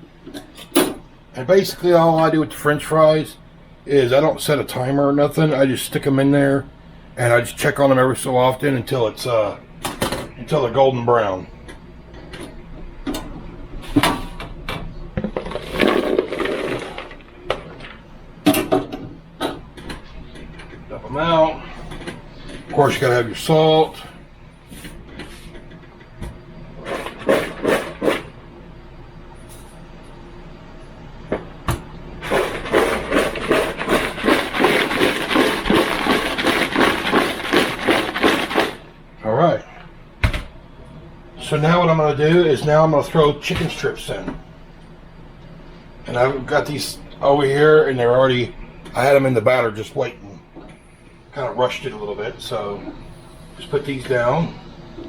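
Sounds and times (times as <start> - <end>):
basket rattling: 15.3 - 17.8, 32.2 - 38.8
fries shaking in a container: 15.4 - 17.3, 32.2 - 38.9.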